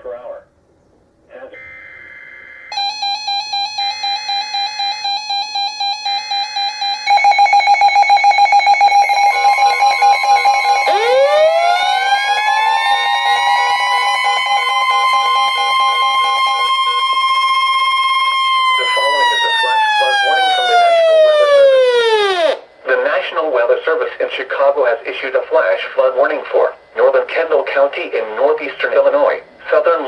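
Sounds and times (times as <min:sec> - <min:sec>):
fast electronic beeping: 0:02.7 - 0:11.0
rising siren-like tones: 0:02.7 - 0:22.6
steady warning tone: 0:02.7 - 0:22.6.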